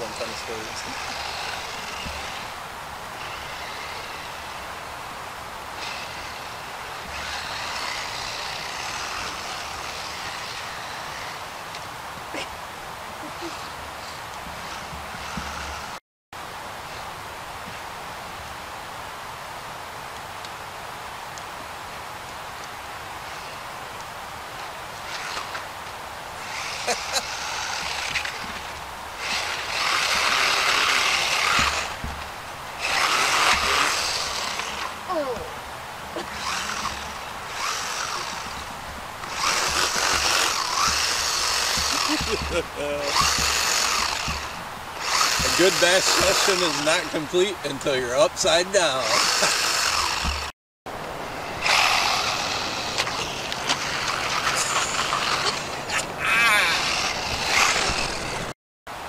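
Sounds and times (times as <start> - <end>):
electric motor whining: 0.0 - 2.6, 3.2 - 4.8, 5.8 - 11.6, 14.5 - 16.0, 26.4 - 35.5, 36.1 - 50.5, 51.3 - 58.5
tyre and drivetrain hiss: 0.0 - 5.0, 24.6 - 58.5.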